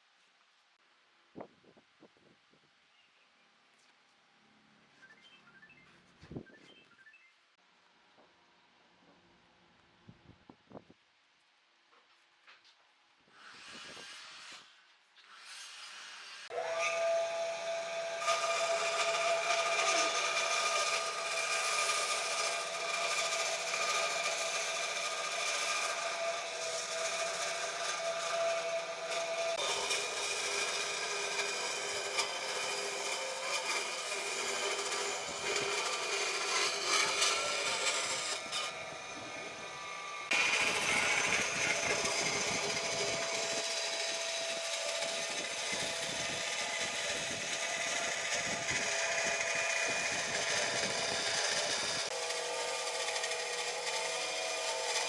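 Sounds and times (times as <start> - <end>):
power tool high-pitched whine: 15.3 - 55.0
tool rushing through wood: 15.4 - 55.0.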